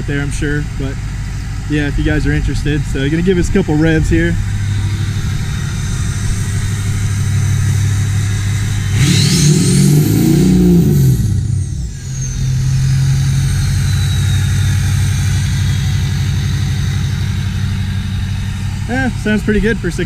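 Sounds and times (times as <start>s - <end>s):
diesel engine idling and revving: 0.0s - 20.0s
turbo whistle: 4.8s - 18.8s.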